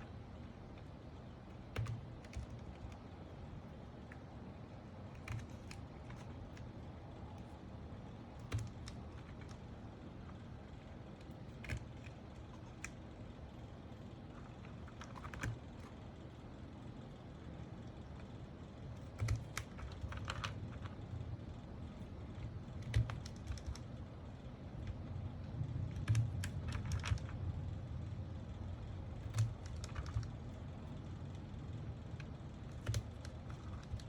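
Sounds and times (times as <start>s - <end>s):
faint low hum: 0.0s - 34.0s
plastic keyboard parts clicking: 1.5s - 3.1s, 5.0s - 7.6s, 8.3s - 10.4s, 11.2s - 13.0s, 14.4s - 16.0s, 19.0s - 21.0s, 22.4s - 23.9s, 24.8s - 27.4s, 29.2s - 30.4s, 32.1s - 34.0s.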